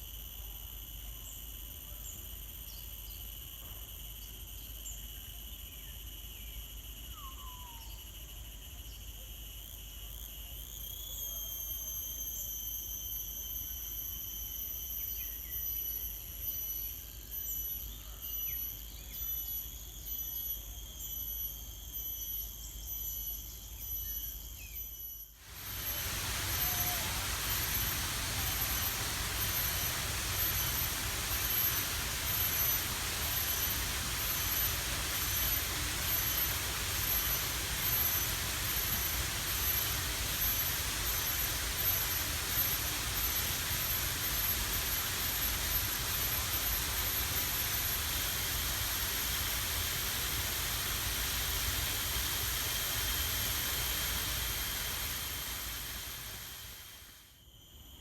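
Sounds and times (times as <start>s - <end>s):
high-pitched insect calls: 0.0s - 58.0s
steady rushing noise: 25.5s - 57.1s.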